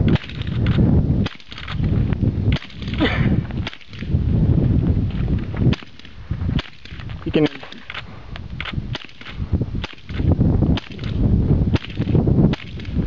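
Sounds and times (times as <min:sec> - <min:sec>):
semi-automatic gunshots: 0:08.6 - 0:13.0.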